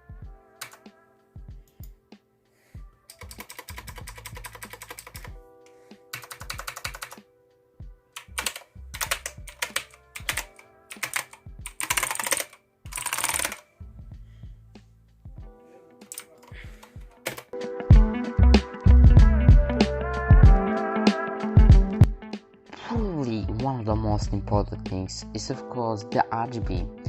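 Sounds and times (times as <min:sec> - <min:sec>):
background music: 0:00.0 - 0:27.0
mechanical keyboard typing: 0:03.1 - 0:05.4, 0:06.1 - 0:07.2, 0:08.2 - 0:13.7.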